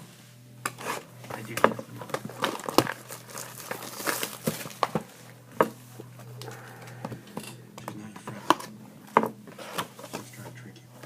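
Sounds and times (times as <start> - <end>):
foil wrappers crinkling: 0.6 - 10.6.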